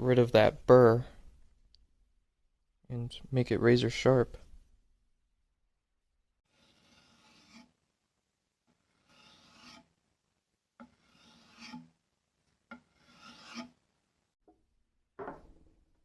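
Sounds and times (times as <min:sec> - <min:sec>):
knife stropped on wooden board: 0:06.5 - 0:07.8, 0:08.7 - 0:09.9, 0:10.8 - 0:12.0, 0:12.7 - 0:13.8.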